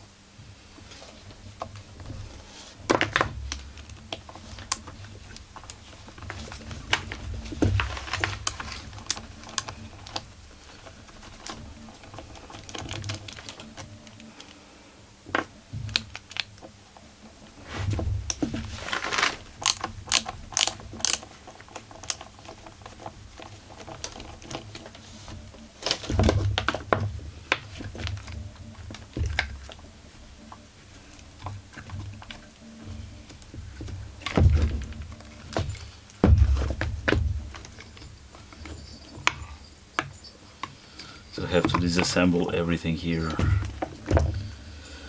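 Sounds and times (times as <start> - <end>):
metal parts clicking and clattering: 18.8 - 24.9
dull knocks: 32.0 - 38.6.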